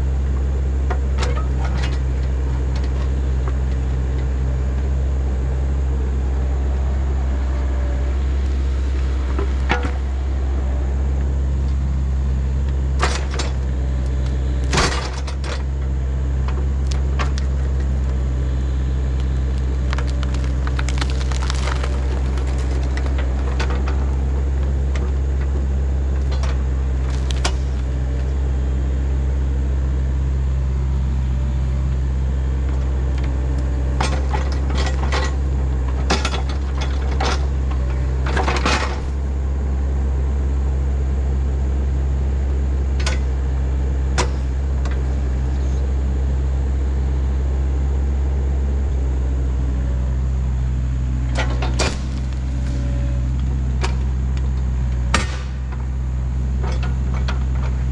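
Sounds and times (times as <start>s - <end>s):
excavator diesel engine: 0.0s - 57.9s.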